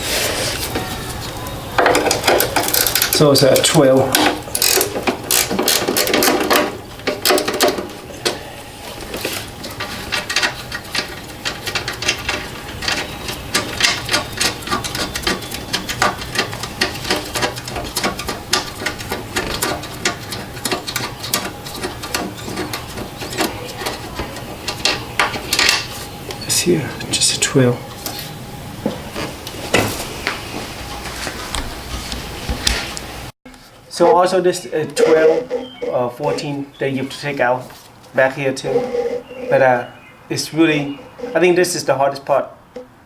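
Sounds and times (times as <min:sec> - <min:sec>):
hand ratchet clicking: 0:02.0 - 0:07.8, 0:09.8 - 0:25.9.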